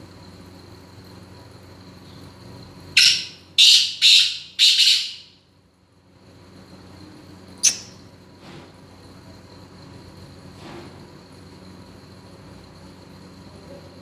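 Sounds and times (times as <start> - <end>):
bird calling harsh notes: 3.0 - 5.3, 7.6 - 8.0.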